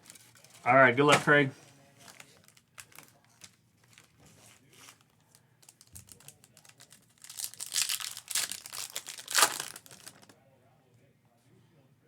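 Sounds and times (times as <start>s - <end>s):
foil wrapper crinkling: 0.0s - 0.7s, 2.0s - 10.4s.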